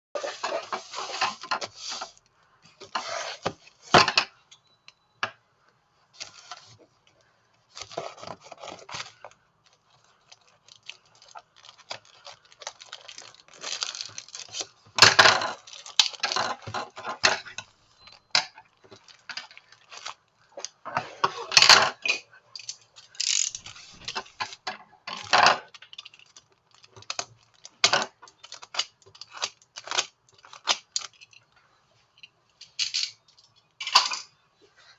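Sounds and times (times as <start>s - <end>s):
packaging rustling and scraping: 0.2s - 4.0s, 6.2s - 21.6s, 23.0s - 31.5s
small plastic parts clicking: 22.6s - 24.6s.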